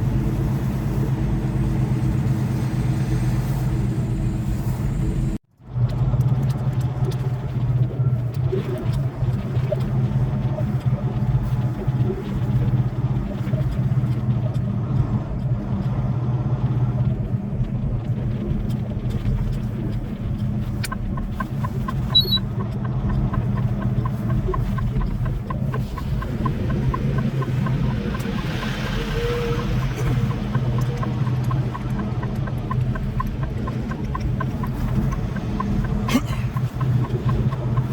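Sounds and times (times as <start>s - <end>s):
truck engine running: 0.0s - 37.9s
turn signal clicking: 18.5s - 37.9s
short high beep: 22.1s - 22.4s.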